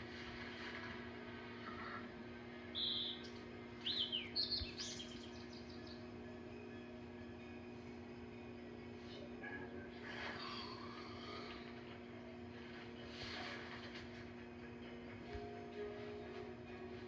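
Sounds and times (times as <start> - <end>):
faint steady hum: 0.0 - 17.0
high bird-like chirping: 2.7 - 6.2.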